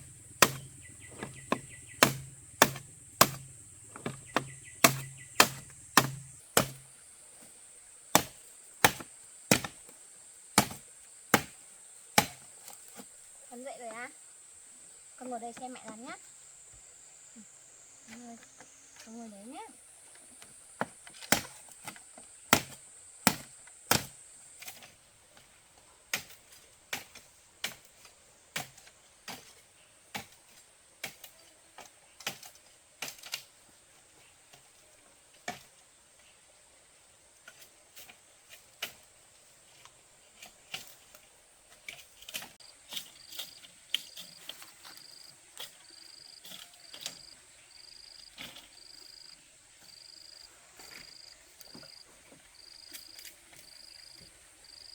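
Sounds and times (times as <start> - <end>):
cricket-like chirping: 0.0 - 7.3, 42.1 - 54.9
insects buzzing: 0.0 - 54.9
hand tool knocking on wood: 0.4 - 6.8.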